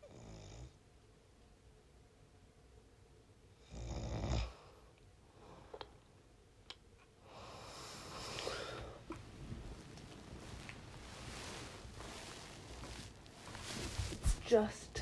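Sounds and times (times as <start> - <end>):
person snoring: 3.6 - 4.6, 7.3 - 9.0.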